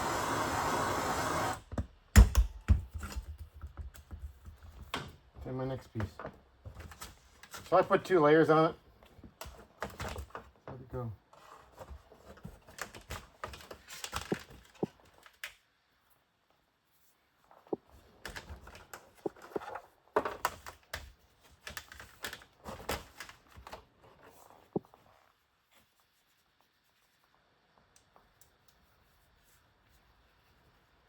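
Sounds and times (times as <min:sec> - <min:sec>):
rustling of tubing: 0:16.0 - 0:31.0.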